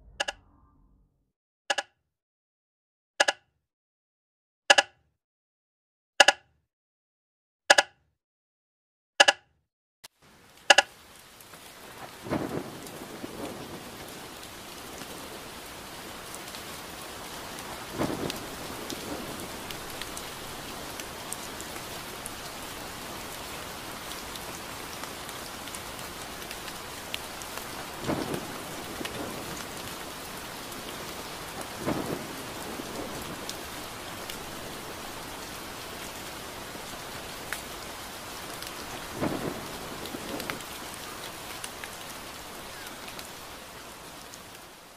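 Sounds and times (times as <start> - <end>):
sharp clicks: 4.7 - 5.0, 10.7 - 10.9
steady rainfall: 10.1 - 44.9
thunder rumbling: 11.6 - 42.8.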